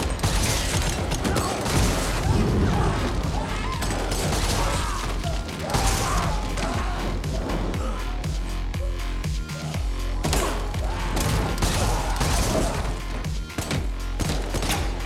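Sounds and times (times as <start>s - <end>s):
mechanical clatter and impacts: 0.0s - 2.6s
gunshots: 0.0s - 7.4s, 10.2s - 15.0s
film music: 0.0s - 15.0s.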